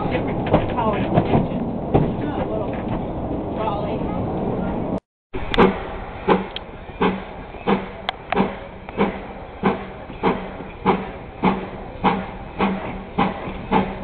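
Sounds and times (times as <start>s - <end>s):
train rumble: 0.0s - 14.0s
train wheels knocking: 5.5s - 14.0s.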